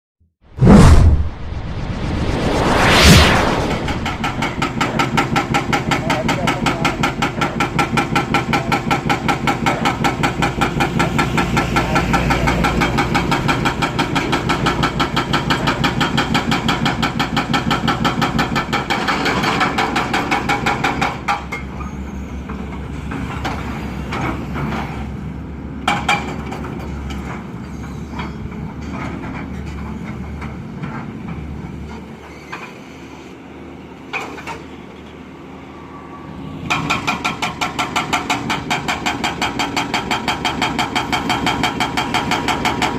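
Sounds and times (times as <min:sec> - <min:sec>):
breaker hammering concrete: 0:04.4 - 0:21.2.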